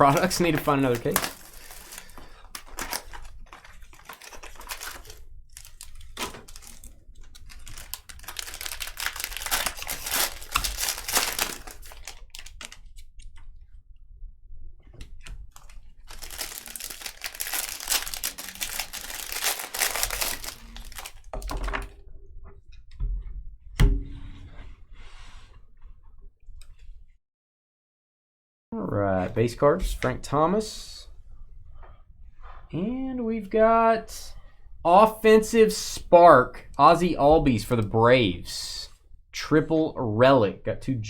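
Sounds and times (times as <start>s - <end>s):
plastic wrapping crinkling and tearing: 0.0s - 13.0s, 15.5s - 21.9s.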